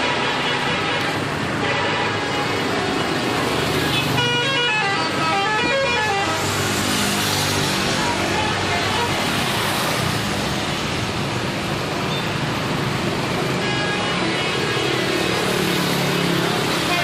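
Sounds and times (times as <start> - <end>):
multi-tone bus horn: 0.0 - 2.7, 3.8 - 6.6, 8.0 - 9.3, 13.6 - 14.9, 16.8 - 17.0
buses passing by: 0.0 - 17.0.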